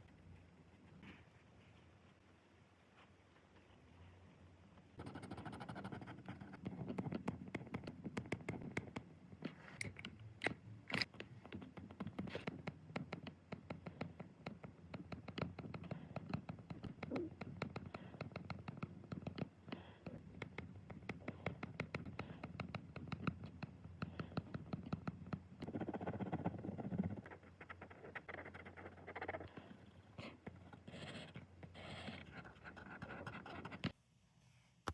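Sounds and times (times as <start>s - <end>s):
pen scratching on paper: 5.0s - 9.0s, 25.6s - 34.0s.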